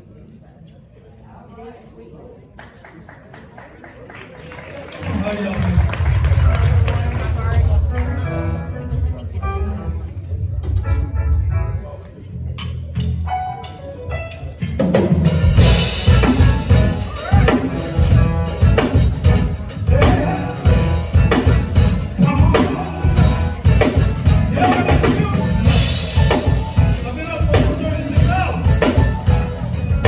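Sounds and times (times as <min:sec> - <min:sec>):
band music with drums: 0:12.9 - 0:30.0.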